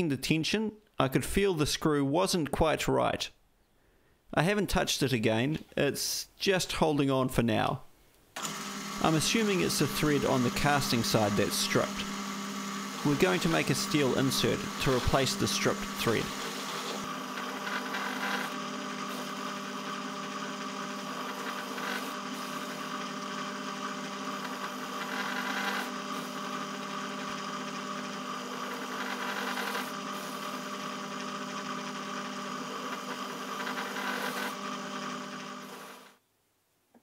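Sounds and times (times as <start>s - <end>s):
lathe motor humming and whining: 8.4s - 36.1s.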